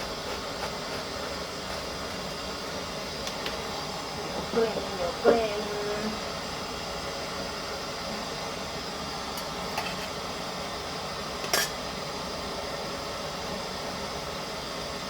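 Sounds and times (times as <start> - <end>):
utensil clinking on cooking pot: 11.4 - 11.8.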